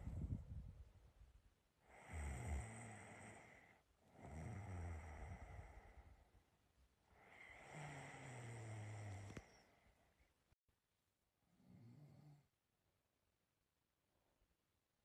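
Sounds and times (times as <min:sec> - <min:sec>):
person snoring quietly: 0:01.8 - 0:06.3, 0:07.1 - 0:09.9, 0:11.5 - 0:12.5.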